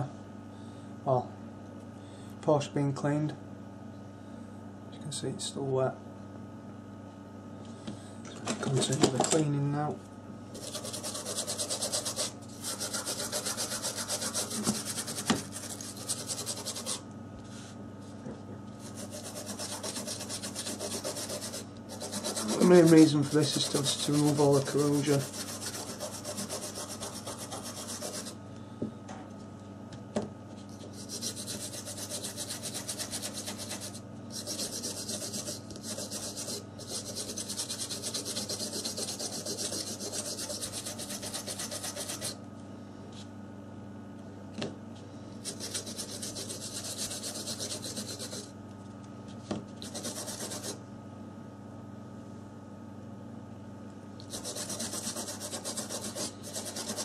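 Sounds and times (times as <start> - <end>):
brush scrubbing circuit board: 10.6 - 17.0, 18.8 - 28.4, 30.7 - 42.4, 45.4 - 48.5, 49.8 - 50.8, 54.3 - 57.0.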